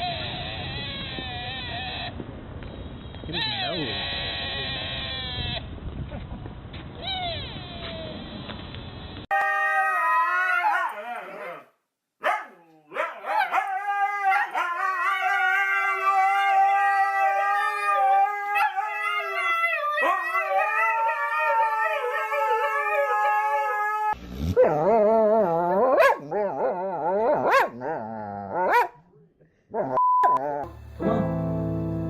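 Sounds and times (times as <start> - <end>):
dog howling: 9.4 - 11.7, 12.4 - 28.8.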